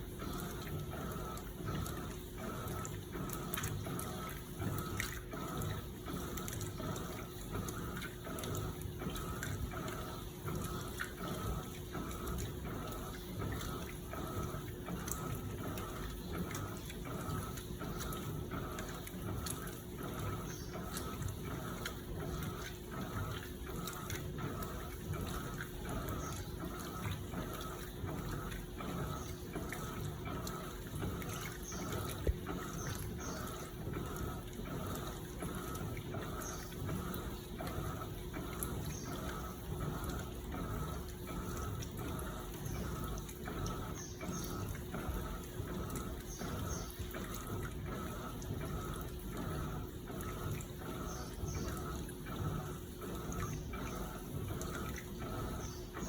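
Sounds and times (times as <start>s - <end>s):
steady hum: 0.0s - 56.0s
washing machine sloshing: 0.0s - 56.0s.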